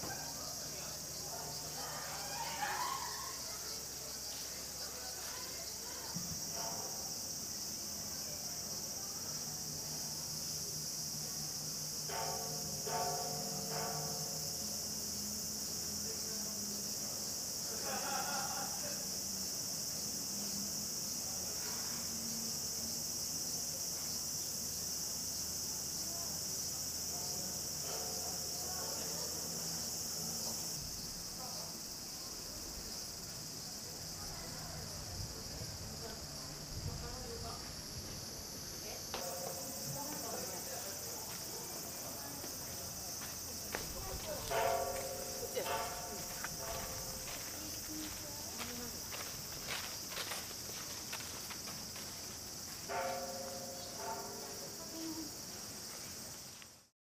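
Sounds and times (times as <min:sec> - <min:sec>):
high-pitched insect chorus: 0:00.0 - 0:56.9.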